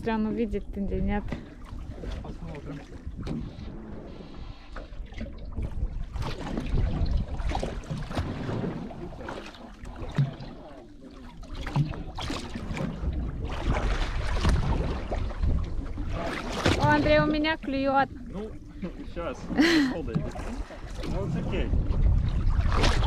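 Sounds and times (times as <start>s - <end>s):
water slapping against hull: 0.0s - 23.0s
wind gusting across microphone: 12.6s - 17.7s, 19.1s - 23.0s.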